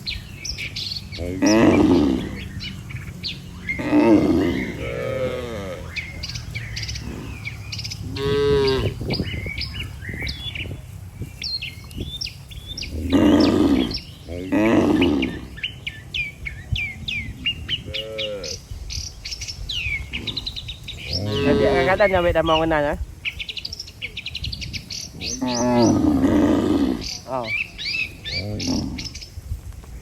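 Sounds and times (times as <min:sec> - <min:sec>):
small birds chirping: 0:00.0 - 0:30.0
cattle mooing: 0:01.1 - 0:10.6, 0:12.8 - 0:15.7, 0:20.1 - 0:22.7, 0:25.2 - 0:29.2.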